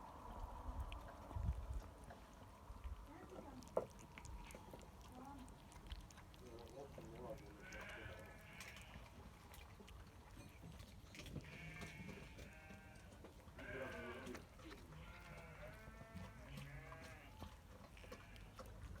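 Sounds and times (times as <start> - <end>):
sheep bleating faintly: 7.4 - 9.0, 11.4 - 17.4.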